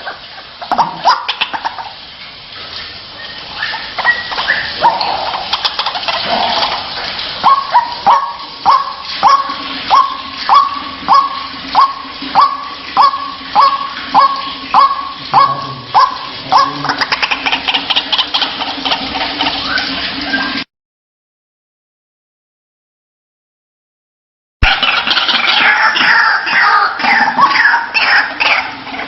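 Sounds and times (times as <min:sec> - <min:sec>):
waterhen calling: 0:00.0 - 0:20.6, 0:24.6 - 0:29.0.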